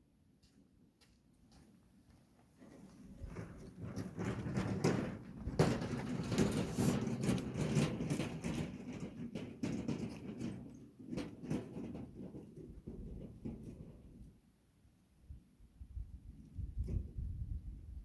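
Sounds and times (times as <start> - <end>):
irregular knocks and clatter: 3.3 - 14.2.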